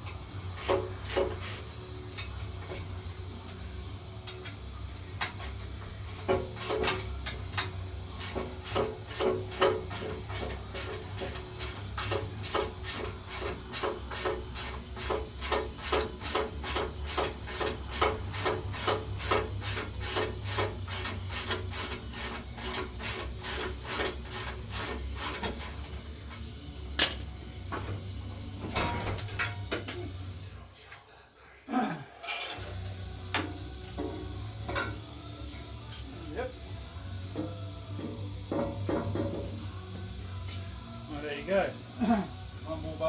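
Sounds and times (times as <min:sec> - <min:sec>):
ratchet spanner rasping: 0:05.2 - 0:26.1.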